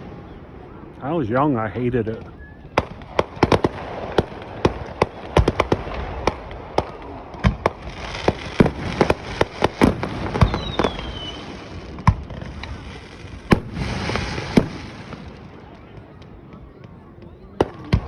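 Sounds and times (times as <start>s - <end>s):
fireworks crackling: 0.0s - 18.0s
fireworks bangs and pops: 2.1s - 18.0s
falling whistle: 10.4s - 11.4s.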